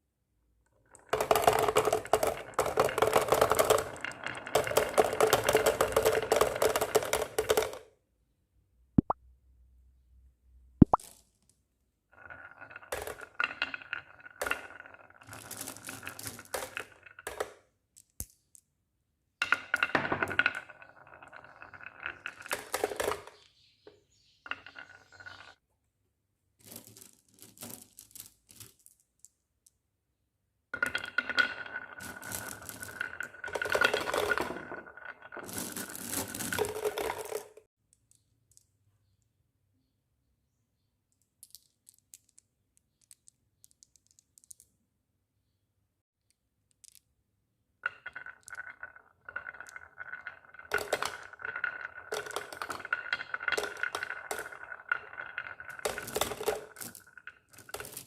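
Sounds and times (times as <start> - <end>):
glass marbles rolling down a track: 0.9 - 7.8, 12.2 - 17.7, 19.4 - 25.6, 30.8 - 37.7, 47.8 - 58.0
marbles clicking against track: 0.9 - 7.8, 12.2 - 18.6, 19.4 - 23.5, 30.8 - 38.6, 41.2 - 44.7, 46.7 - 47.0, 47.8 - 58.0.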